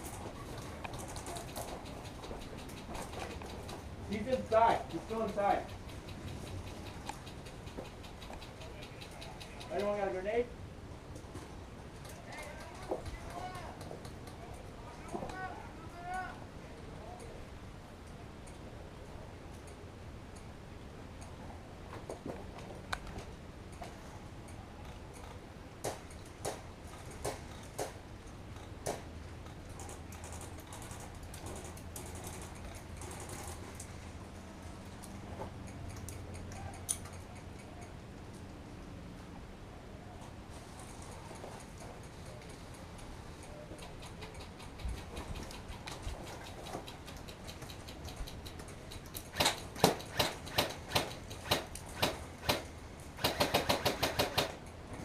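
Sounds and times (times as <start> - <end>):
faint rapid ticking: 0.4 - 10.3, 42.0 - 51.8
airsoft gun shots: 49.3 - 54.6.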